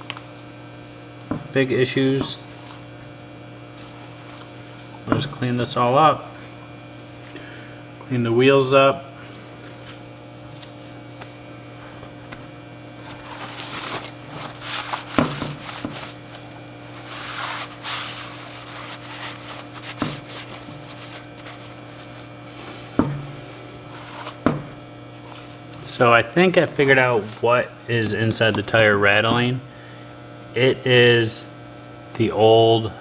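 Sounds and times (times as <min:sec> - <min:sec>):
electrical mains hum: 0:00.0 - 0:33.0
rubbing and scraping: 0:13.0 - 0:24.6.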